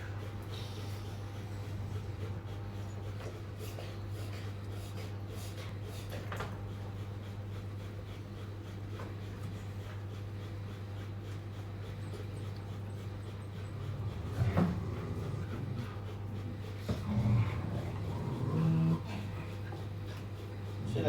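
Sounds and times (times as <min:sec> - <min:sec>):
dog panting: 0:00.1 - 0:21.0
low-pitched dog sound: 0:10.1 - 0:20.5
steady low hum: 0:10.1 - 0:20.8.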